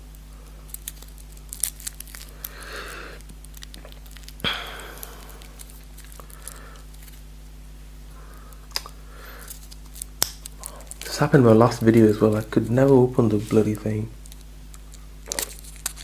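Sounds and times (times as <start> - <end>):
breathy noise: 2.1 - 7.2, 8.1 - 9.8, 10.5 - 13.8.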